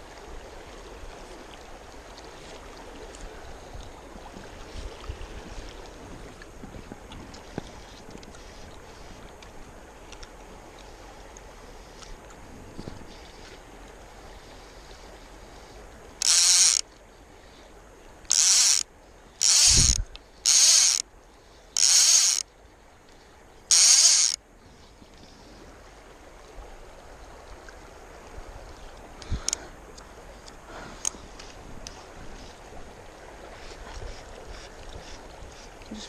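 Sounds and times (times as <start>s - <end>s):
fly reel drag ratcheting: 16.1s - 16.9s, 18.2s - 21.1s, 21.7s - 22.5s, 23.7s - 24.4s.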